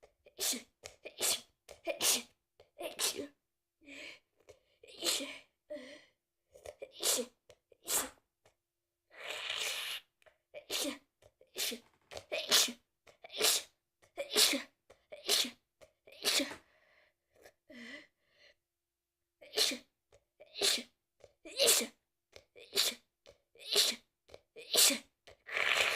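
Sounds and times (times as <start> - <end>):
woman sneezing: 12.4 - 12.8.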